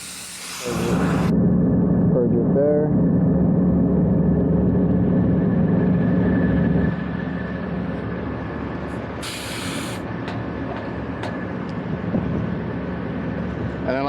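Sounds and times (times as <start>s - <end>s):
refrigerant hissing from hose: 0.0s - 1.3s, 9.2s - 10.0s
machinery hum: 0.0s - 14.0s.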